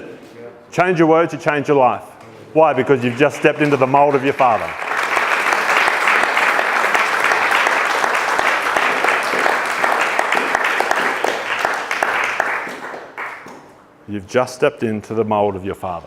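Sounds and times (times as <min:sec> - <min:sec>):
crowd applauding: 0:02.8 - 0:13.7.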